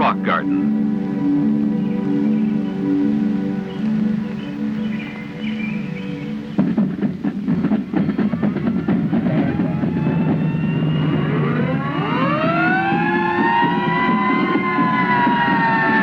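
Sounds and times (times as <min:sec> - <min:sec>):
soft held music: 0:00.0 - 0:16.0
rising siren wails: 0:00.4 - 0:06.6, 0:08.1 - 0:16.0
drum roll and drumming: 0:06.4 - 0:16.0.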